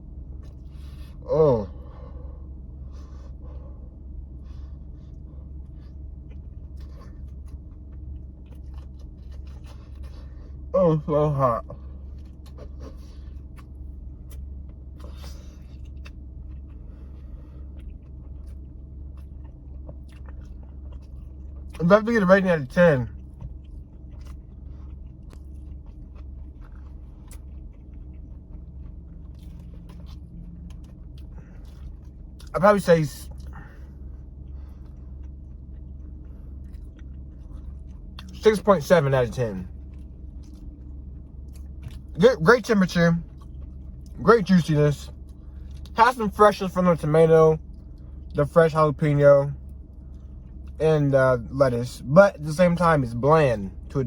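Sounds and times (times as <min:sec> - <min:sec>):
person chewing hot food: 0:00.0 - 0:46.0, 0:47.6 - 0:48.5, 0:49.6 - 0:50.8
steady low hum: 0:00.0 - 0:54.0
steady low rumble: 0:00.0 - 0:54.0.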